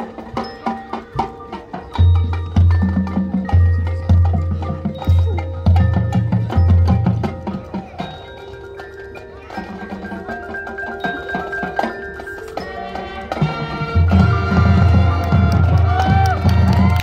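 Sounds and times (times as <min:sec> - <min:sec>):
mallet percussion ringing: 0:00.0 - 0:17.0
marching band playing: 0:00.0 - 0:17.0.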